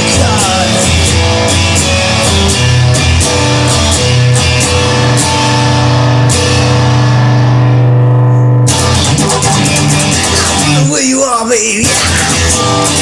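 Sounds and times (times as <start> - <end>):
bass guitar: 0.0 - 13.0
electric guitar chords: 0.0 - 13.0
drum kit: 11.8 - 13.0.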